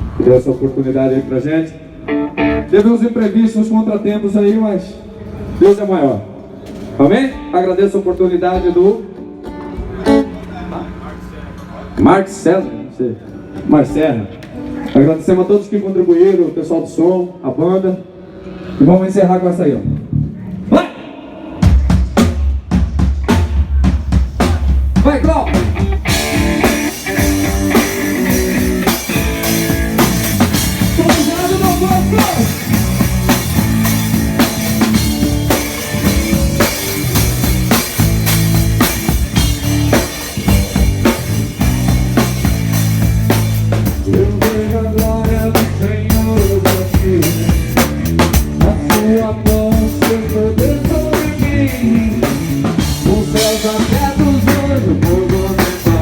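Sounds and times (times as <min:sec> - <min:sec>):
live band playing: 0:00.0 - 0:04.6, 0:06.4 - 0:11.7, 0:21.4 - 0:56.0
drum kit beat: 0:21.6 - 0:56.0.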